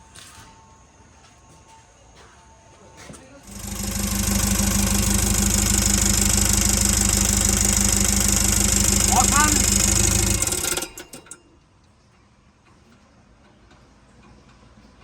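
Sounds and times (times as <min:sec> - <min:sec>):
engine starting and idling: 0:03.5 - 0:11.4.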